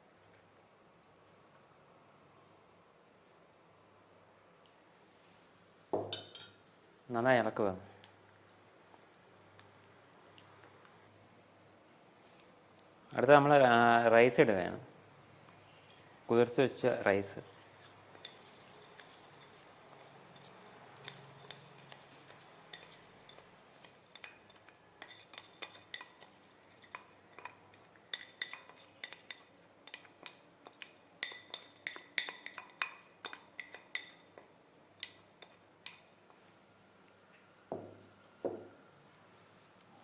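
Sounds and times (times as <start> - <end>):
spoon clinking against bowl: 6.0 - 6.6, 18.1 - 34.4.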